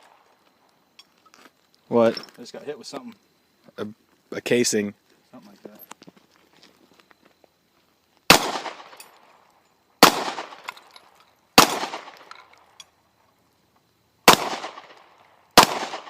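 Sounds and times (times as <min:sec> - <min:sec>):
gunshots with echo: 0:08.3 - 0:09.0, 0:10.0 - 0:10.6, 0:11.6 - 0:12.2, 0:14.3 - 0:15.0, 0:15.6 - 0:16.0.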